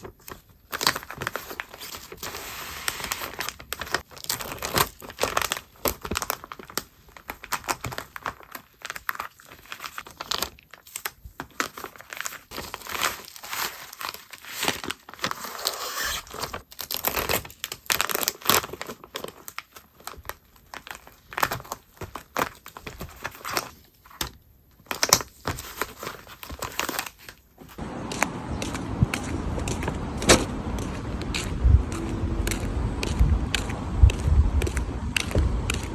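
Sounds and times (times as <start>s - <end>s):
plastic packaging crinkling: 0.0s - 24.2s, 24.8s - 27.8s
plastic tearing: 0.0s - 27.8s.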